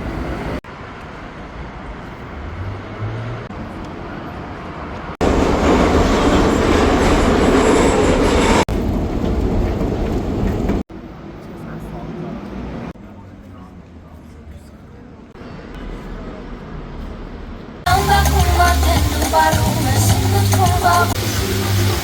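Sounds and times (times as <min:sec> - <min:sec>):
city street ambience: 0:00.0 - 0:22.0
loud steady rushing noise: 0:15.4 - 0:22.0.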